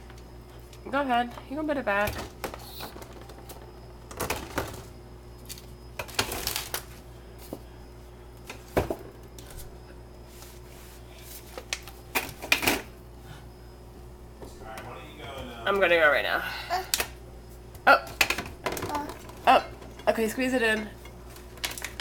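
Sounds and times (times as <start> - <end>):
bottles clattering in refrigerator: 1.9 - 5.0, 18.0 - 22.0.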